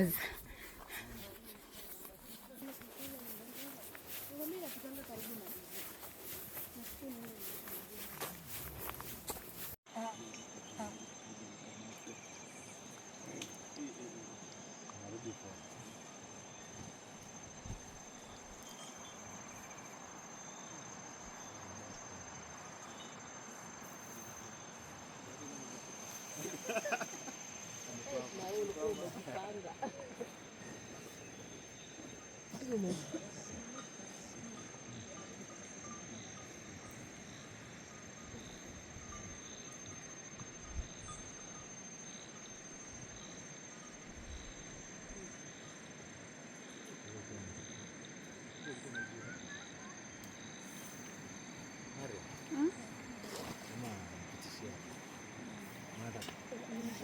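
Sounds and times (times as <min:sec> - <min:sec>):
background hiss: 0:00.0 - 0:48.8
high-pitched insect trill: 0:00.0 - 0:57.0.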